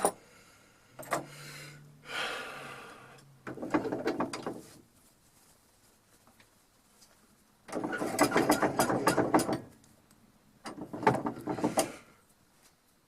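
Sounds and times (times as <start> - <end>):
metal clattering rattle: 7.7 - 9.8.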